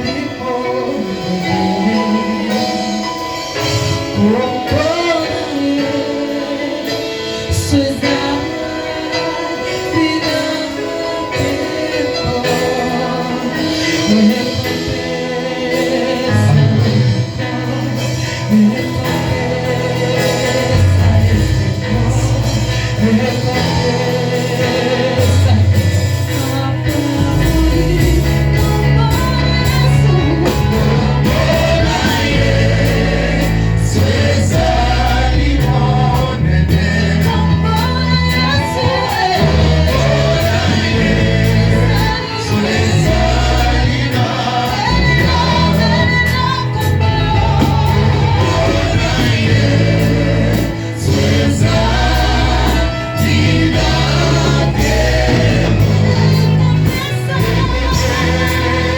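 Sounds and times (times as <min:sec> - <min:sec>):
gospel choir singing: 0:00.0 - 0:58.9
steady percussion beat: 0:11.4 - 0:58.9
bass line: 0:12.2 - 0:58.9.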